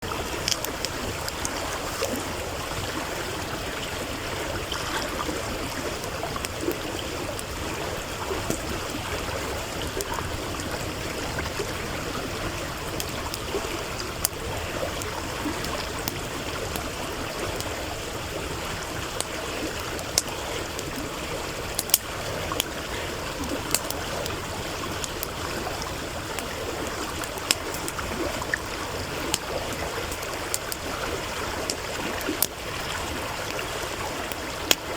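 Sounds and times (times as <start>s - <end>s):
campfire crackling: 0.0s - 34.9s
stream rushing and gurgling: 0.0s - 34.9s.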